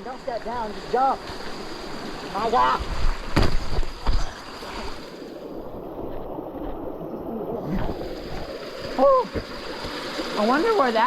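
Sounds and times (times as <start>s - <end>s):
creek water rushing: 0.0s - 11.0s
thump: 3.3s - 4.2s.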